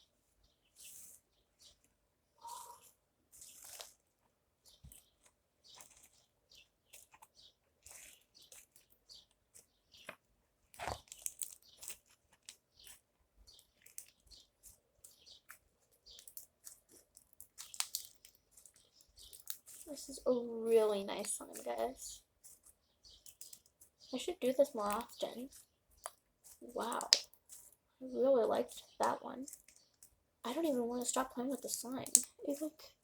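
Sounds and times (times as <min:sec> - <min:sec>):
slime with foam beads crackling: 0:04.8 - 0:33.0.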